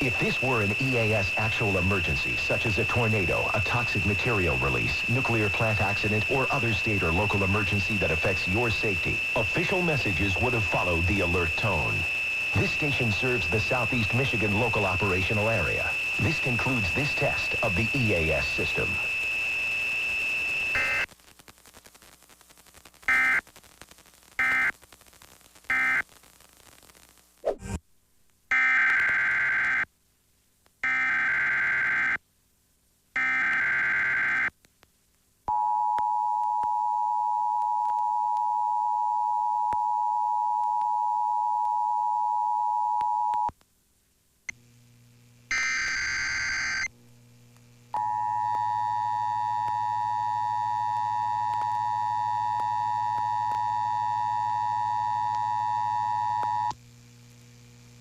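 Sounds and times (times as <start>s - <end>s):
digital data bursts: 0.0s - 21.1s, 45.5s - 46.9s.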